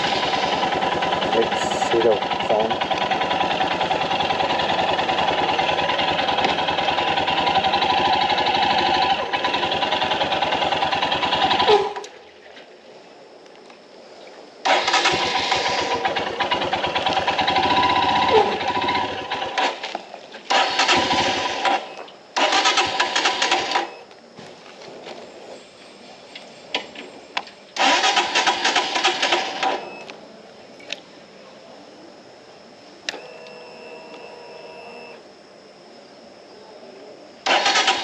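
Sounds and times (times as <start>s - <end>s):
motorcycle engine bursts: 0.0s - 12.0s, 14.6s - 19.9s, 20.5s - 24.0s, 27.8s - 30.0s, 37.4s - 38.0s.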